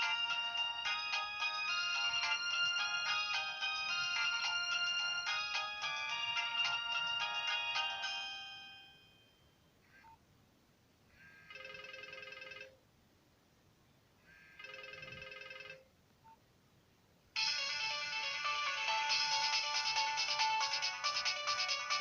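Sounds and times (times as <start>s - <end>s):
mobile phone ringtone melody: 0.0s - 9.6s, 11.5s - 12.7s, 14.6s - 15.8s, 17.4s - 22.0s
short phone ringing bursts: 11.3s - 12.8s, 14.4s - 15.8s.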